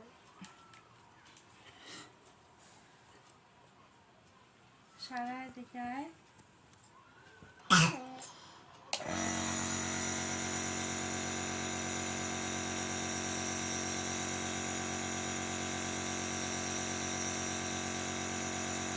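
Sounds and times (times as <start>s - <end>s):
compressor nebulizer humming: 9.0s - 18.9s.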